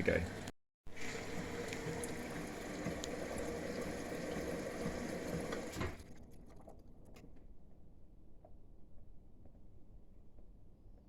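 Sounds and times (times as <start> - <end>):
washing machine whirring: 0.0 - 7.6.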